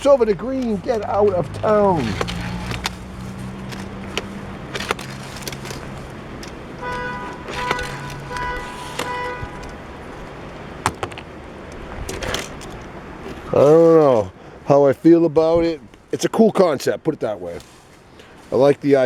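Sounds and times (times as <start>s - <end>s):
sharp clicks: 0.0s - 9.8s.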